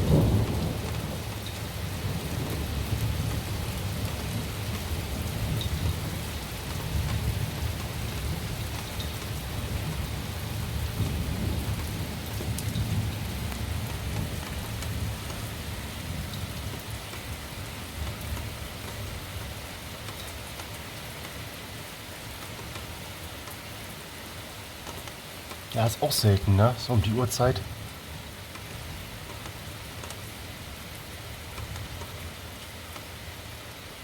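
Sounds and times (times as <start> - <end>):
rain falling: 0.0 - 34.0.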